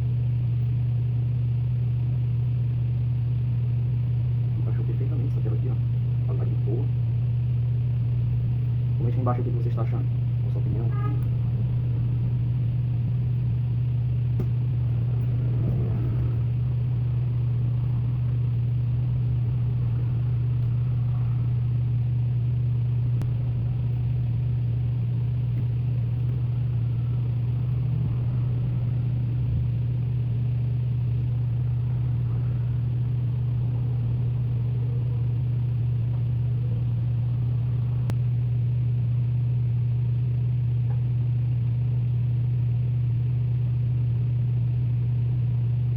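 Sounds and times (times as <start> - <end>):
loud low hum: 0.0 - 45.9.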